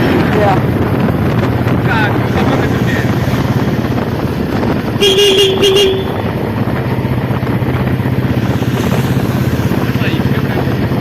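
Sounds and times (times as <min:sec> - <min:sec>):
motorcycle engine running: 0:00.0 - 0:11.0
horn toots: 0:04.9 - 0:06.5.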